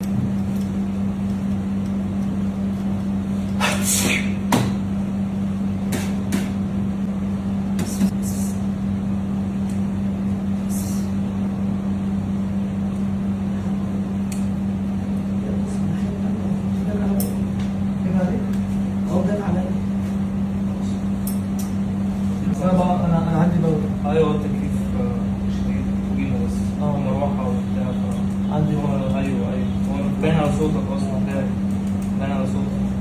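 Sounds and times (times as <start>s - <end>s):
steady low hum: 0.0s - 33.0s.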